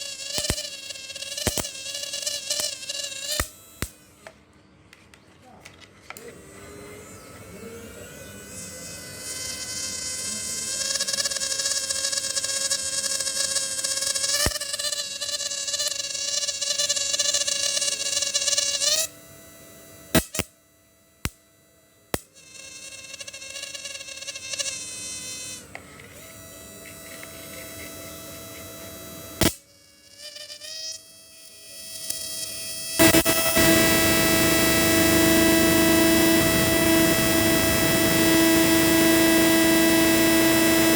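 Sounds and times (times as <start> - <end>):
inverter buzzing whine: 0.0 - 4.3, 28.2 - 40.9.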